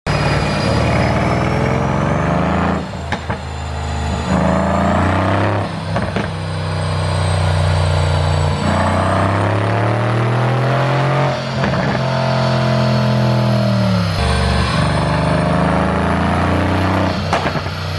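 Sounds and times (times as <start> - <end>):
car engine revving: 0.1 - 17.9.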